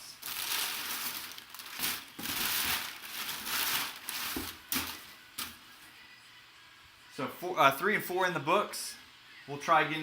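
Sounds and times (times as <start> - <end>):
packing material crumpling: 0.0 - 5.5.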